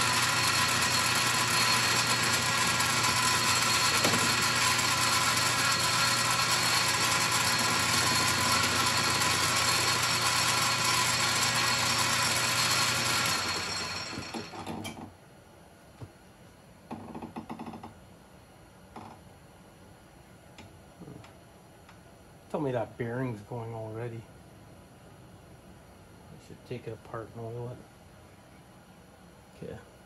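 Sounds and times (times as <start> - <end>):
metal lathe running: 0.0 - 14.7.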